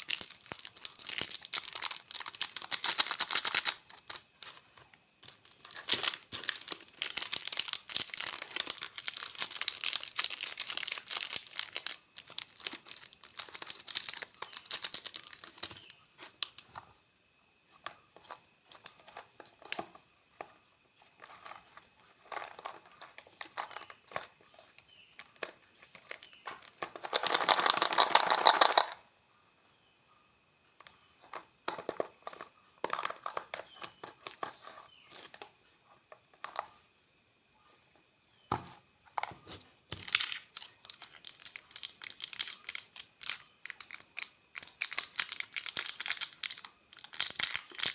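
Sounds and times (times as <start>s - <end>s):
plastic wrappers crinkling: 0.0s - 16.8s, 21.2s - 29.0s, 39.9s - 47.9s.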